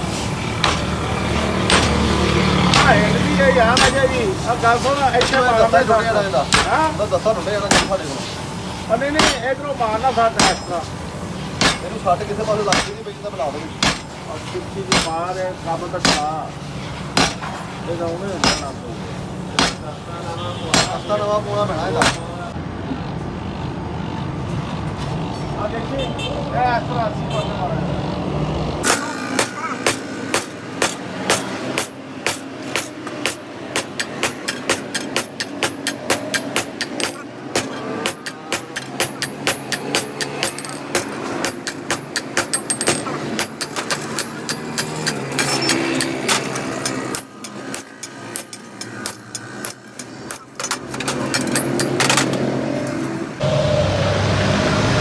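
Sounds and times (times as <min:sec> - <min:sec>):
steady machine noise: 0:00.0 - 0:22.4, 0:28.8 - 0:54.0
hammer striking steel bar: 0:00.6 - 0:04.2, 0:05.2 - 0:05.7, 0:06.5 - 0:06.9, 0:07.7 - 0:08.1, 0:09.2 - 0:09.5, 0:10.4 - 0:10.9, 0:11.6 - 0:12.0, 0:12.6 - 0:13.1, 0:13.8 - 0:14.2, 0:14.9 - 0:15.3, 0:16.0 - 0:16.4, 0:17.2 - 0:17.6, 0:18.4 - 0:18.9, 0:19.6 - 0:19.9, 0:20.6 - 0:21.2, 0:21.9 - 0:22.4, 0:28.8 - 0:53.1.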